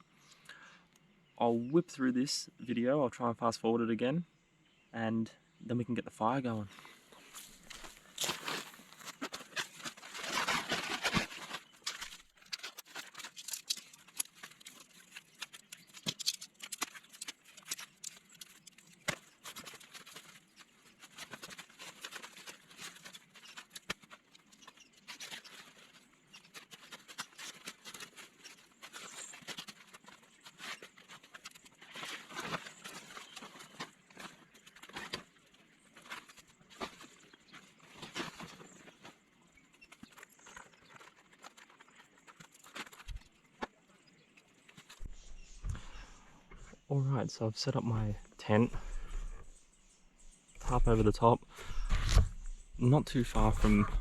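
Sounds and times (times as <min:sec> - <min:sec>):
tent fabric rustling: 0:06.8 - 0:43.6, 0:50.6 - 0:54.0.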